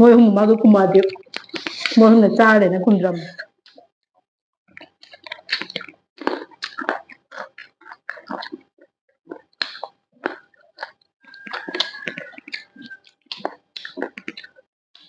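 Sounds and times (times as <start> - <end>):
chewing crunchy snacks: 1.0 - 2.0, 4.7 - 15.0.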